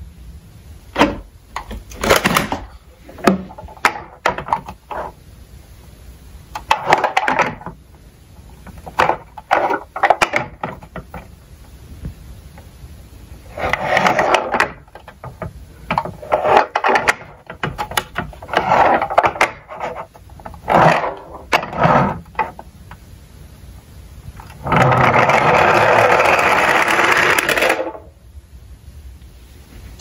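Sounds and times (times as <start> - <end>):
toy cars rattling on plastic: 1.6 - 5.1, 6.6 - 7.8, 8.6 - 11.3, 13.5 - 22.6, 24.4 - 28.1.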